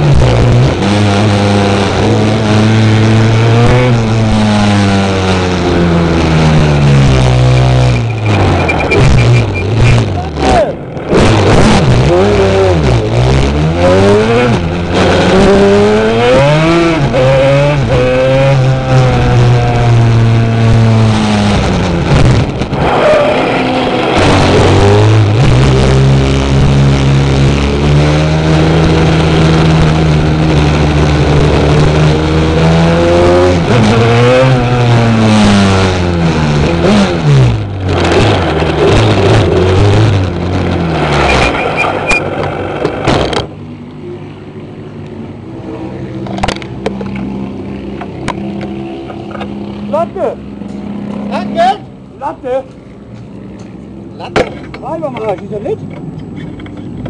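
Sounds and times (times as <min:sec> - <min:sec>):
quad engine revving: 0:00.0 - 0:43.5.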